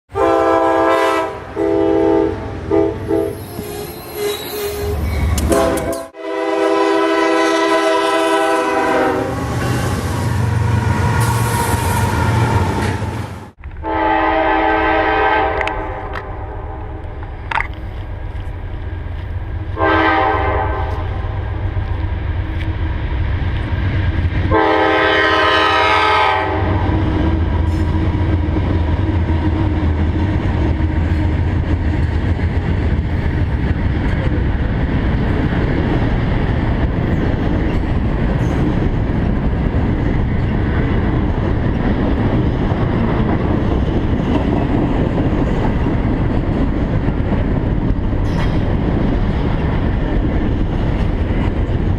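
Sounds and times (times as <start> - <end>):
locomotive horn blasts: 0.1 - 9.9, 13.8 - 16.8, 19.8 - 21.4, 24.5 - 27.0
locomotives rumbling: 26.5 - 51.9
train wheels clacking on rails: 27.4 - 51.9.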